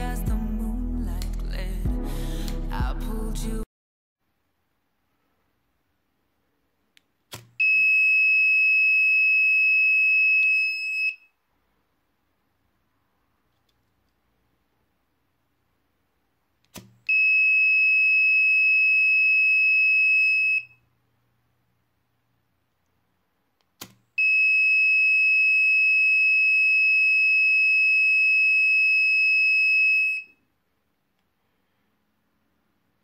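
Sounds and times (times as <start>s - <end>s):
sharp click: 7.0s - 7.6s, 16.6s - 17.0s.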